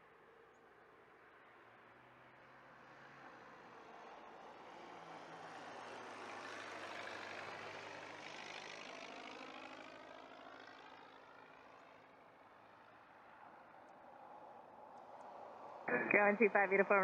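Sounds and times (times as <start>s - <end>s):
propeller airplane passing by: 5.1s - 13.5s, 14.1s - 17.0s.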